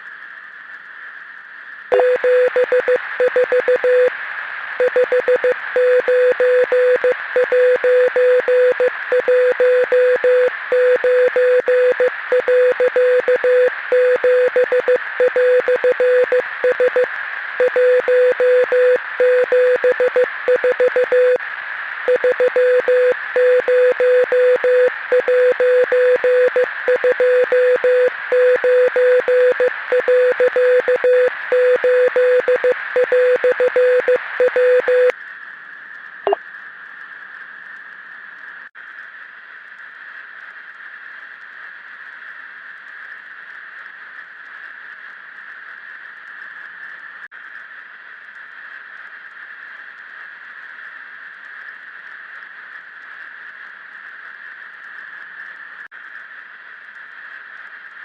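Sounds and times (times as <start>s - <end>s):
morse code beeping: 1.9s - 4.1s, 4.8s - 21.4s, 22.1s - 35.1s
radio hiss: 1.9s - 31.6s.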